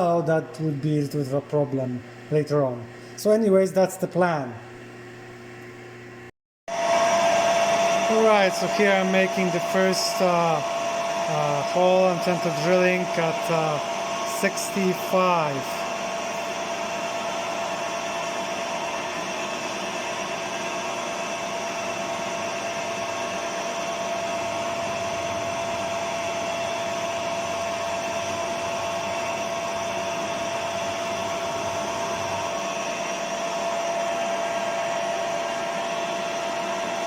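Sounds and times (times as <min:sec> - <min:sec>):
machine motor whining: 0:06.7 - 0:20.0, 0:21.8 - 0:37.0.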